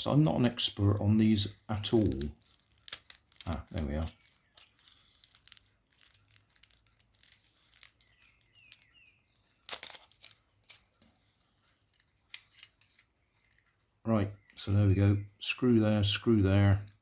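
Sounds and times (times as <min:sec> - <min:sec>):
plastic parts scraping and clicking: 0:01.2 - 0:14.6.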